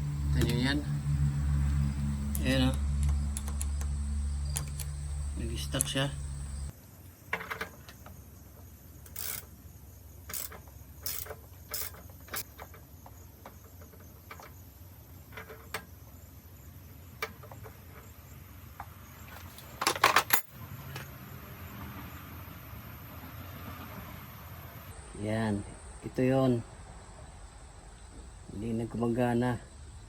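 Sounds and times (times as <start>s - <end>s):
metal parts clattering: 19.8s - 20.5s.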